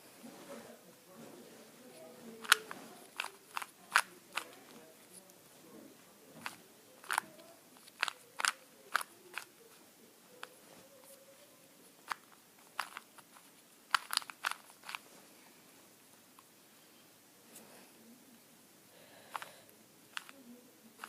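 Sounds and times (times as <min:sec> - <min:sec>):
plastic puzzle cube clicking: 0:02.4 - 0:04.6, 0:06.4 - 0:09.5, 0:12.0 - 0:15.0, 0:20.1 - 0:20.4.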